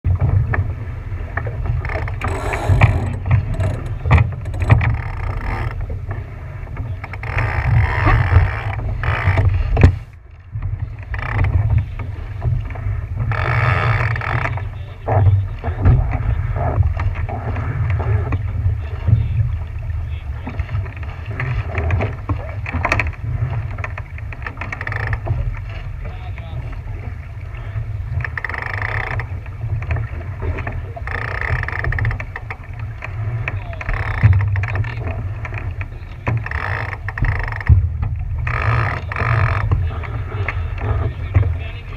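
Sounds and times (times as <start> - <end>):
boat moving through water: 0.0 - 41.9
heavy low rumble: 0.1 - 7.2
wind buffeting microphone: 0.1 - 13.3.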